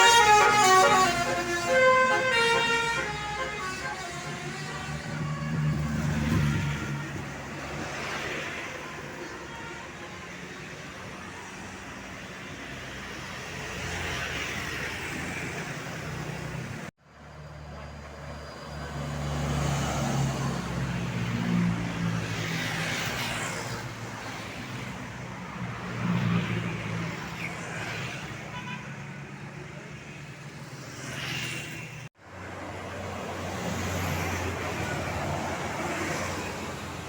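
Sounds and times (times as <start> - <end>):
vehicles passing by: 0.0 - 37.0.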